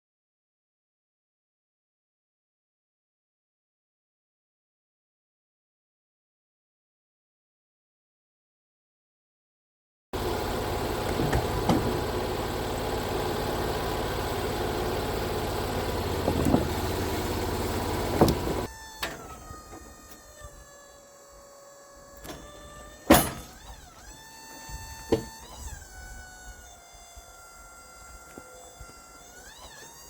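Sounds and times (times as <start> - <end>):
steady whine: 10.2 - 29.9
band sawmill running: 10.2 - 30.0.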